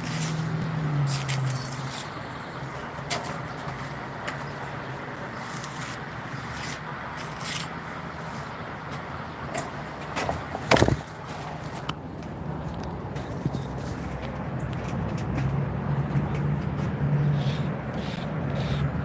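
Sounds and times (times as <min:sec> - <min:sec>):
knocks and scrapes of handwork: 0:05.4 - 0:08.6.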